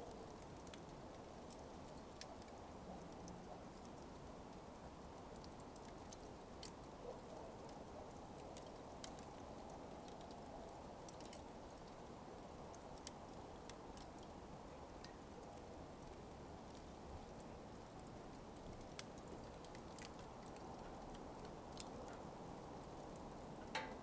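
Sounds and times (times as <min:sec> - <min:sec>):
coals crackling: 0:00.0 - 0:24.0
low hiss: 0:21.1 - 0:24.0.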